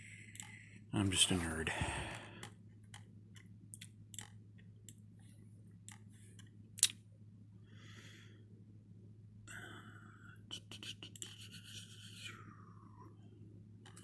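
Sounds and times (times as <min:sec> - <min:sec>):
low electrical hum: 0:00.0 - 0:14.0
mouse and keyboard clicks: 0:02.4 - 0:05.0.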